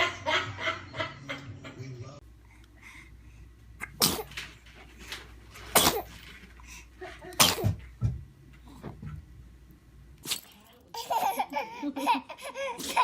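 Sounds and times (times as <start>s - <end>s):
baby sneezing: 3.8s - 4.4s, 5.7s - 6.2s, 7.4s - 7.8s, 12.8s - 13.0s.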